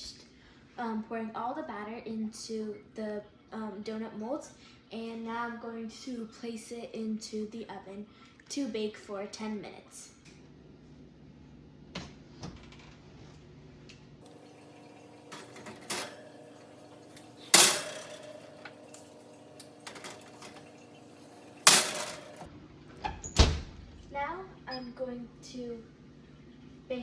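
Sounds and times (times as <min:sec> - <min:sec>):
metal pan clanking: 0:15.3 - 0:22.5.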